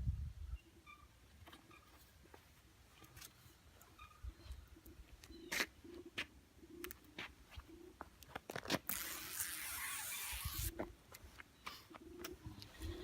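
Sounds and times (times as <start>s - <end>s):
tape liner tearing: 8.5s - 10.8s.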